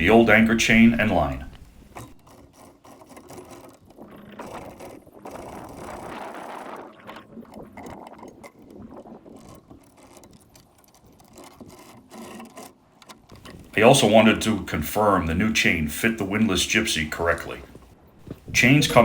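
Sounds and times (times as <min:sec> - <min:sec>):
anchor chain rattling: 0:00.0 - 0:05.7, 0:09.7 - 0:15.6, 0:16.7 - 0:19.0.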